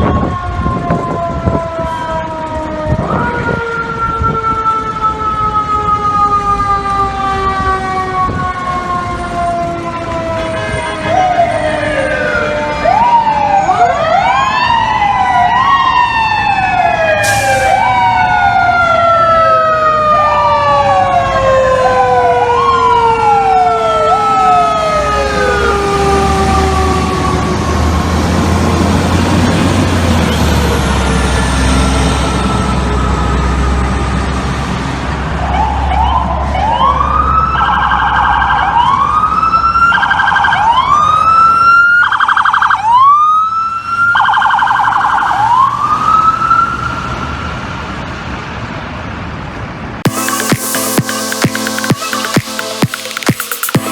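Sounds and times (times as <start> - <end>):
electronic siren wailing: 0.0 - 29.1, 35.4 - 46.9
heavy truck engine rumbling: 24.8 - 35.4.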